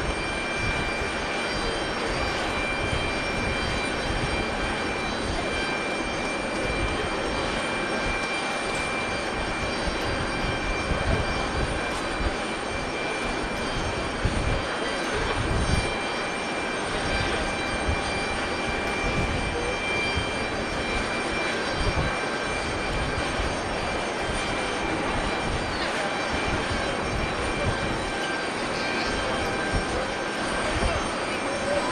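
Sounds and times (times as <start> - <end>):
jet engines whining: 0.0 - 31.9.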